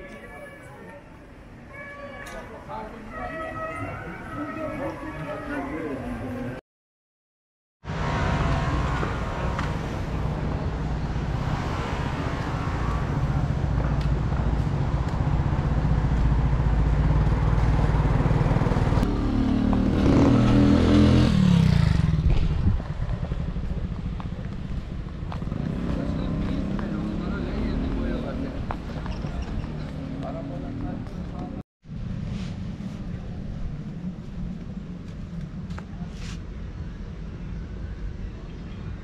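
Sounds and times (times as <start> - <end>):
engine running and revving: 11.2 - 30.4.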